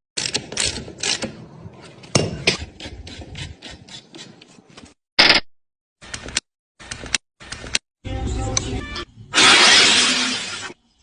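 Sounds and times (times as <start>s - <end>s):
short loud burst: 9.4s - 10.7s.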